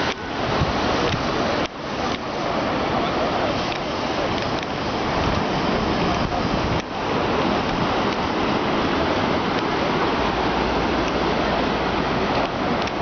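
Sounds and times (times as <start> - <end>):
sea surf washing in: 0.0 - 13.0.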